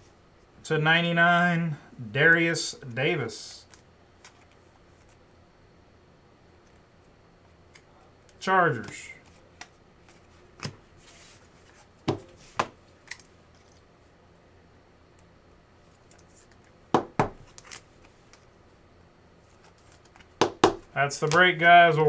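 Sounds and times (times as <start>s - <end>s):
cards tapping on table: 12.1s - 12.8s, 17.0s - 17.6s, 20.4s - 20.9s.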